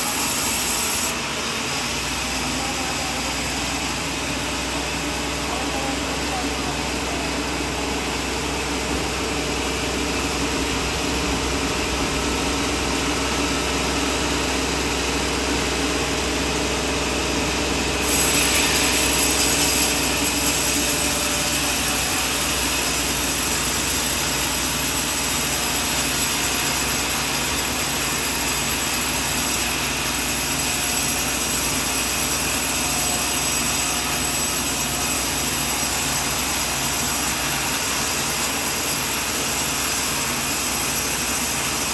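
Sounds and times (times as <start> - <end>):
sharp hiss: 0.0 - 1.1, 18.0 - 34.6.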